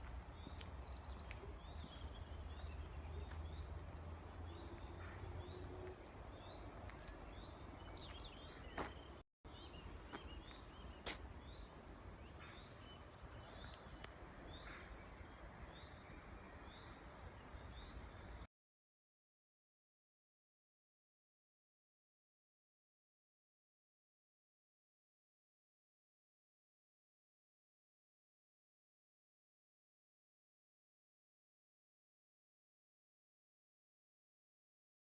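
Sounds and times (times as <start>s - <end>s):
bird chirping: 0.4s - 18.5s.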